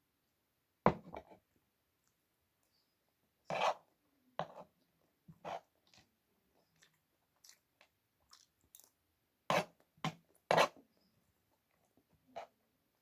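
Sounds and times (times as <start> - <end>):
person chewing food: 5.8 - 8.9.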